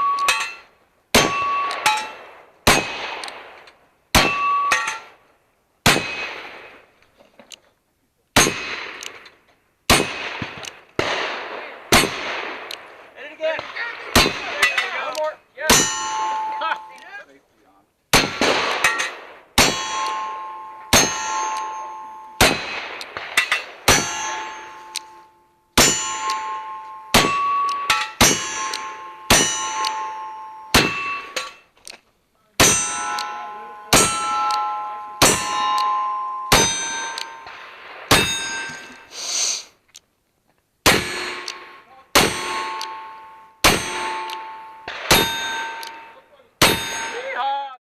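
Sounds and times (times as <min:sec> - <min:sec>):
steel target ringing clang: 0:00.0 - 0:03.2, 0:04.2 - 0:05.1, 0:14.2 - 0:17.0, 0:18.2 - 0:31.7, 0:32.6 - 0:39.1, 0:40.9 - 0:47.4.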